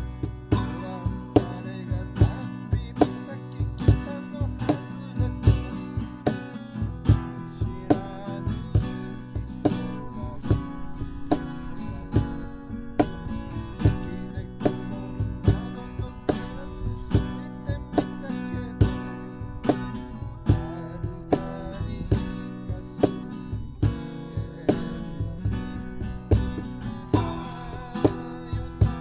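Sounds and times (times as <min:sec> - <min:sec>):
acoustic guitar strumming: 0:00.0 - 0:29.0.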